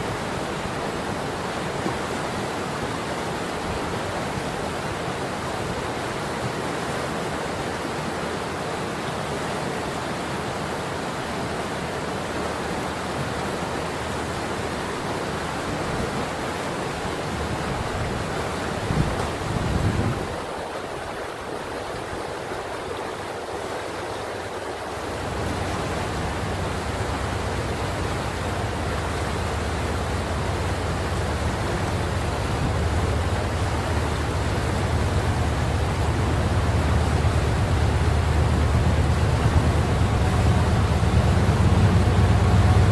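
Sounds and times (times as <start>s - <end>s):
river water rushing: 0.0s - 42.9s
low buffet: 25.2s - 42.9s
low rumble: 25.2s - 42.9s.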